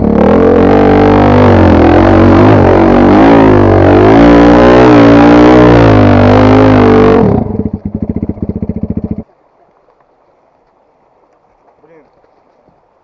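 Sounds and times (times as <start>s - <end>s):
motorcycle engine running: 0.0s - 9.3s.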